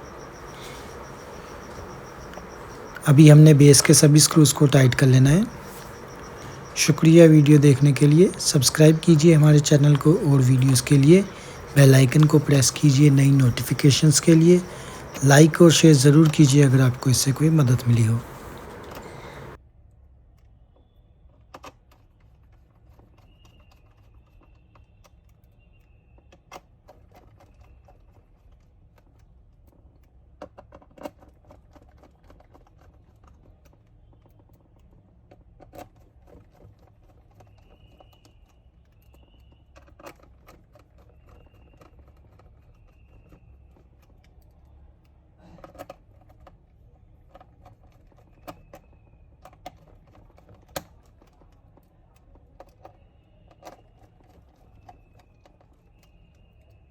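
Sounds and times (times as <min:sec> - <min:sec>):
low steady hum: 0:00.0 - 0:19.6.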